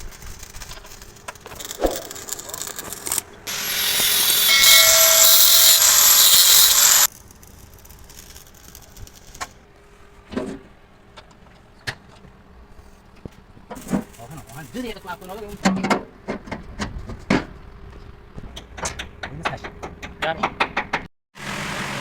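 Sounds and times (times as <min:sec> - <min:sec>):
compressed air hissing: 0:03.5 - 0:07.1.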